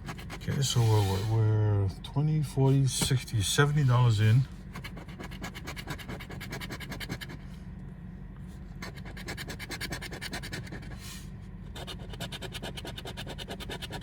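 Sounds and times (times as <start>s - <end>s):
lottery ticket being scratched: 0.0s - 1.4s, 2.7s - 7.4s.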